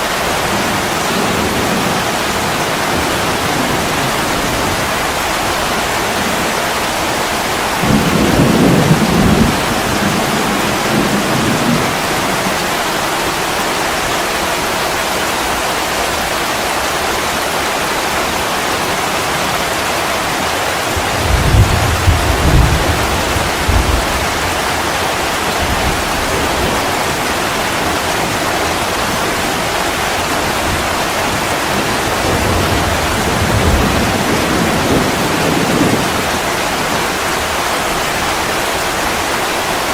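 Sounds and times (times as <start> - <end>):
steady rain hissing: 0.0 - 39.9
thunder rumbling: 0.2 - 13.2, 20.9 - 38.4.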